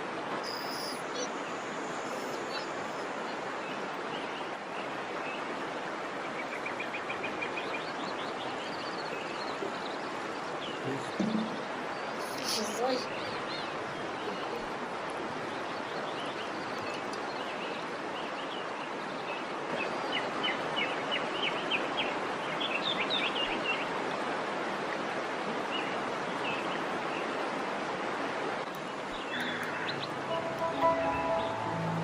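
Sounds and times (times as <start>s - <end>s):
birds chirping: 0.4s - 5.4s, 6.2s - 17.8s, 28.7s - 32.0s
waterfall rushing: 7.6s - 15.6s, 28.8s - 32.0s.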